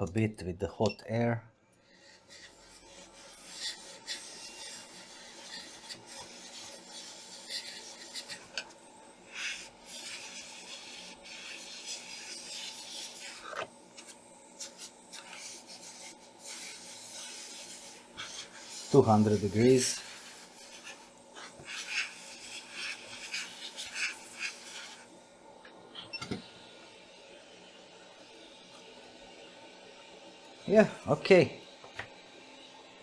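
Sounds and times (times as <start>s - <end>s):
scratchy rubbing on circuit board: 2.0s - 8.6s, 9.3s - 25.1s.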